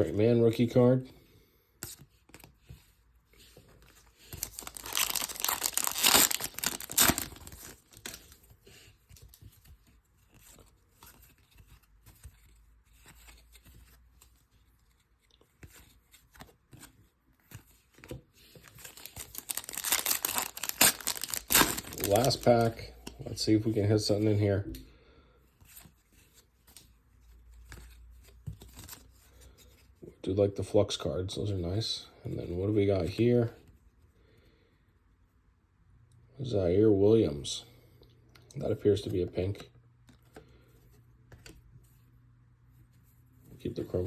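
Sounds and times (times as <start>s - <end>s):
foil wrapper tearing and crinkling: 4.3s - 8.3s, 18.8s - 22.8s.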